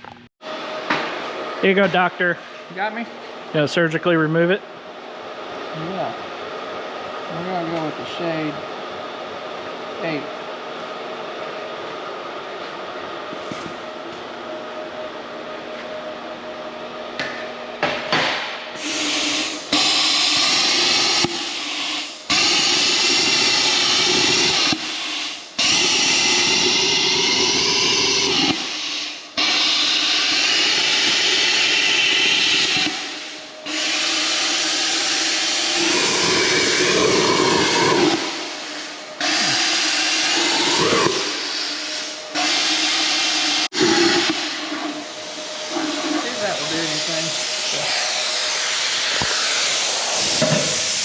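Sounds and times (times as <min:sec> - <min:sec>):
plasma cutter arc hissing: 0:18.8 - 0:51.0.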